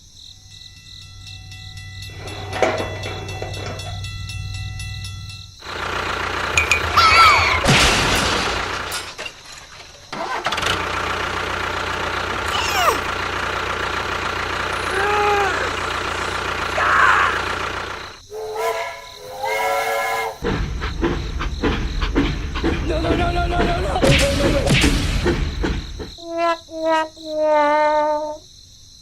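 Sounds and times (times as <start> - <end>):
engine running: 1.4 - 9.2, 10.1 - 18.3, 20.4 - 26.2
voice-like pitched sound: 12.5 - 13.1.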